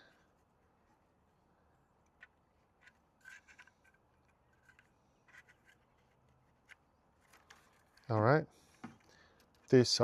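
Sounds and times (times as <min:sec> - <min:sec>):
small plastic parts clicking: 0:02.0 - 0:09.8.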